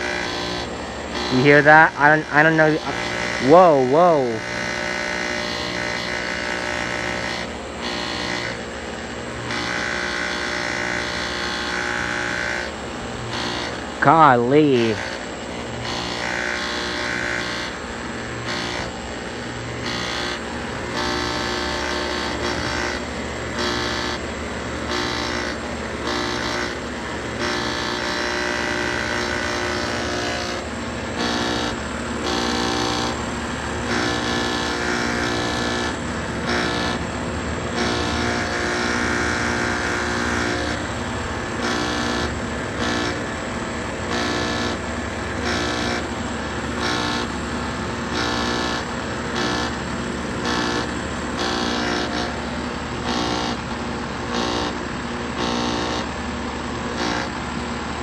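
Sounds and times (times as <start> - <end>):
air conditioner droning hum: 0.0 - 4.7, 12.8 - 15.9, 29.4 - 56.7.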